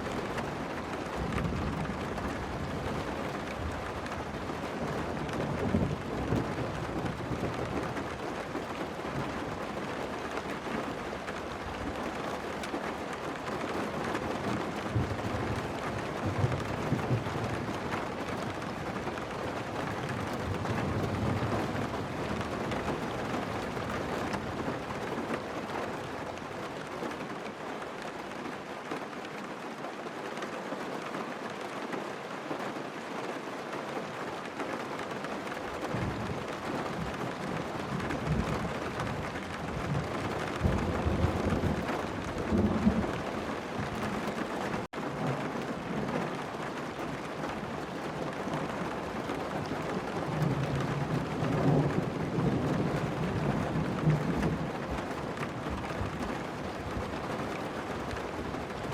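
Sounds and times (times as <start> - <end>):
steady rain: 0.0 - 58.9
thunder rumbling: 35.8 - 46.5, 48.4 - 58.9.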